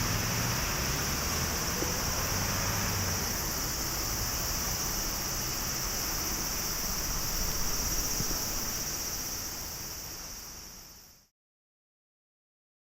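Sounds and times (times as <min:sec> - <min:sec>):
distant jet engines rushing: 0:00.0 - 0:10.0
steady high-pitched hiss: 0:00.0 - 0:11.3.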